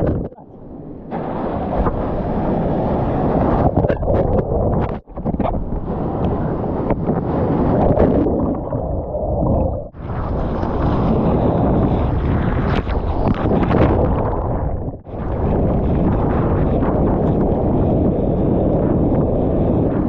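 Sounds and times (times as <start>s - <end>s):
surf water rushing: 0.0s - 11.0s
wind buffeting microphone: 0.0s - 20.0s.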